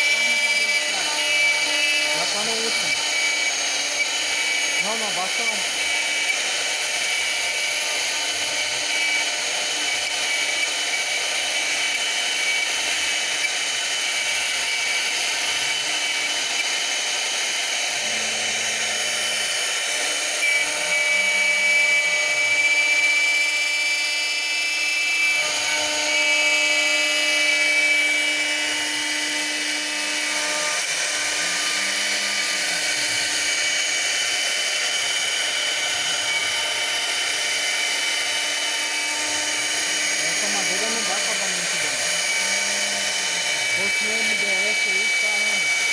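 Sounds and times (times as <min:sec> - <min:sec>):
machine high-pitched whine: 0:00.0 - 0:45.9
motors humming: 0:00.0 - 0:45.9.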